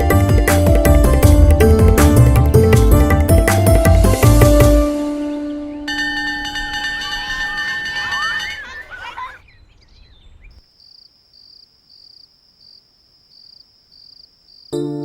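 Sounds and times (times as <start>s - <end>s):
held music chord: 0.0s - 8.5s, 14.8s - 15.0s
birds chirping: 4.7s - 14.3s
crickets chirping: 6.5s - 14.8s.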